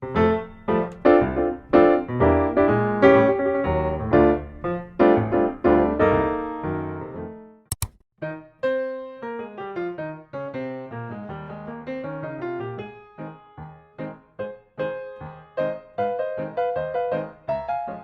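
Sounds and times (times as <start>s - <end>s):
piano music: 0.0s - 7.4s, 9.4s - 18.0s
sharp clicks: 7.7s - 8.0s.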